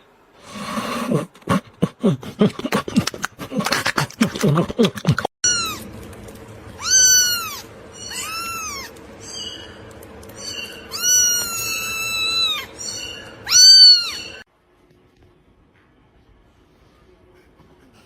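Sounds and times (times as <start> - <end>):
cat meowing: 5.4 - 5.9, 6.8 - 9.5, 10.4 - 14.4.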